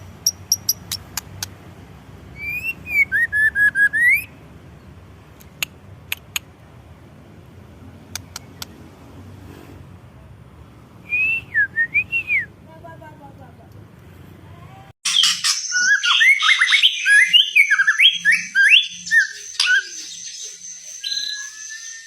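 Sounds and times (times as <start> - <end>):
sharp clicks: 0.5 - 1.6, 5.4 - 6.5, 8.1 - 8.8.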